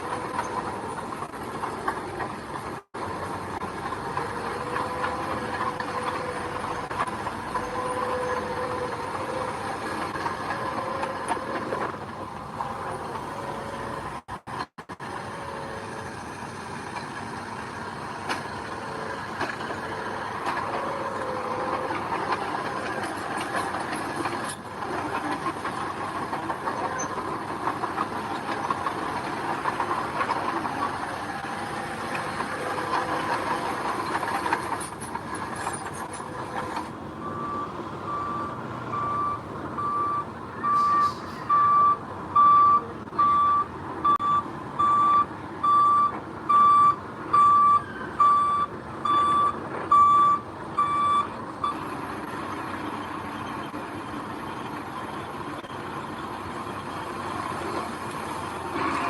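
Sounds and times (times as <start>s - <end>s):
heavy diesel machinery running: 0.0s - 59.0s
reversing alarm beeping: 37.2s - 51.8s.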